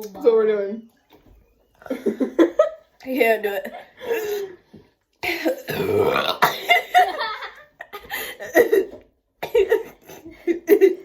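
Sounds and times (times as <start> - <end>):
person burping deeply: 5.4 - 6.9.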